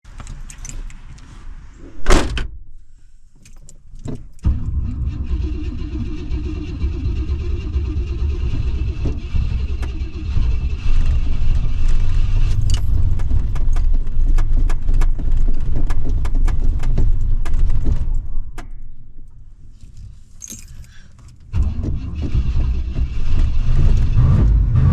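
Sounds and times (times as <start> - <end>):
keys jangling: 0.4 - 1.0, 12.5 - 13.0, 20.3 - 21.4
loud thump: 1.9 - 2.6
engine cranking rumble: 4.4 - 18.6, 20.4 - 24.9.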